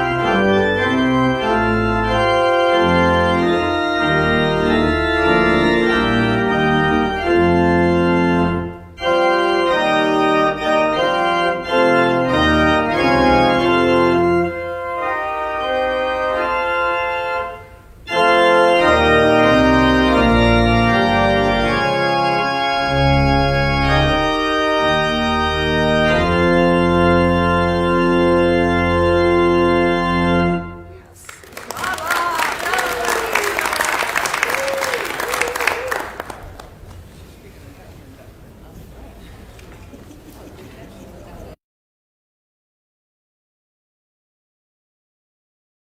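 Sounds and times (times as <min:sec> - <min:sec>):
organ playing full chords: 0:00.0 - 0:31.1.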